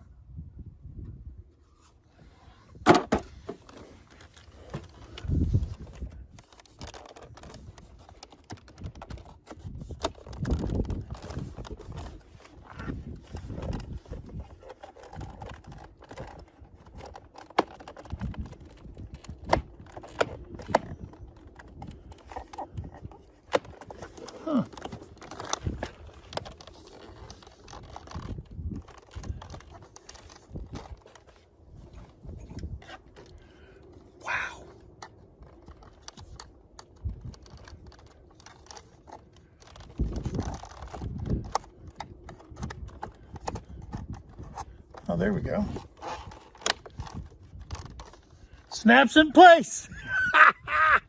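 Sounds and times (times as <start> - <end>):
plastic parts clicking and tapping: 2.8 - 33.4, 34.9 - 45.1.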